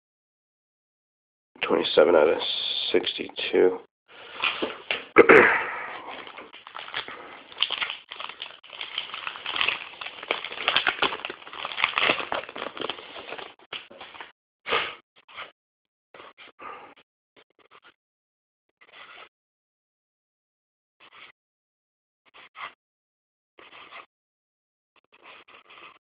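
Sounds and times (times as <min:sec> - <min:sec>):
plastic wrapper crinkling: 0:06.1 - 0:14.3.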